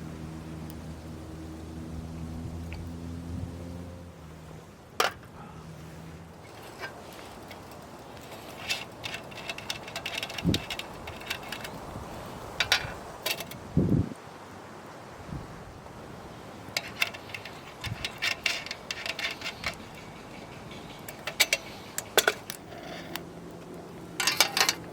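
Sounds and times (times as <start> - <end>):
light metallic clinks: 16.8 - 23.2.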